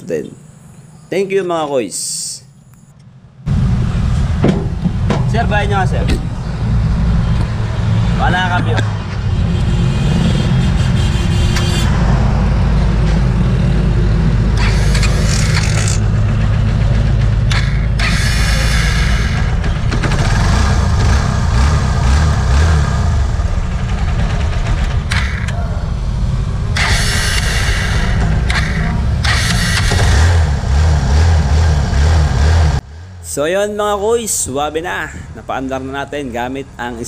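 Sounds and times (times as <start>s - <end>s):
motorcycle engine running: 19.3s - 27.4s.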